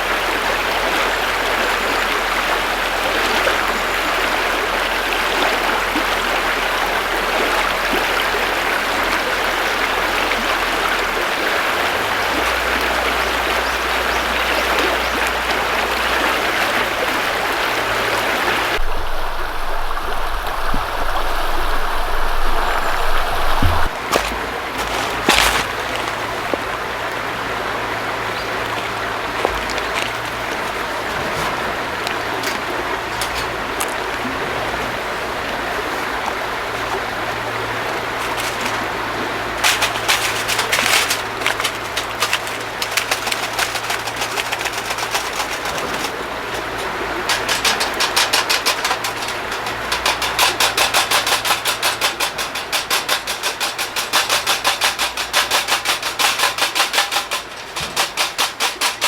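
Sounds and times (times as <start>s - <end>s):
rushing water: 0.0s - 59.0s
low hum: 18.8s - 24.4s.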